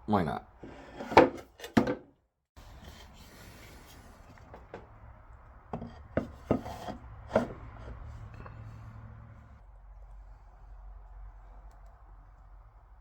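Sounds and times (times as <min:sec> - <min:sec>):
wood rubbing and scraping: 0:02.6 - 0:09.5.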